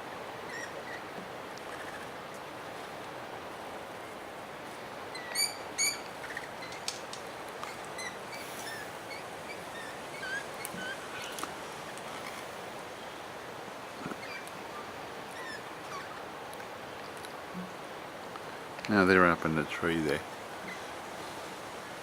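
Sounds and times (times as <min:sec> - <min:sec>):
outdoor background hiss: 0:00.0 - 0:22.0
small birds calling: 0:00.4 - 0:02.2, 0:05.1 - 0:07.0, 0:07.6 - 0:13.2, 0:13.9 - 0:16.3, 0:19.7 - 0:21.4.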